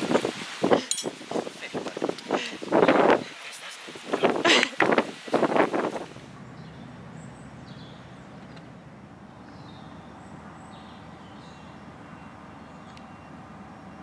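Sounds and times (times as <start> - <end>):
wind buffeting microphone: 0.0 - 13.8
low background rumble: 6.0 - 14.0
small birds chirping: 6.3 - 14.0.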